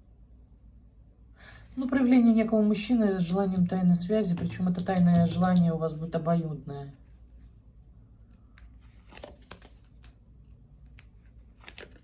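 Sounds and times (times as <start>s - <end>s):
low room hum: 0.0s - 12.0s
cards rustling: 8.3s - 12.0s.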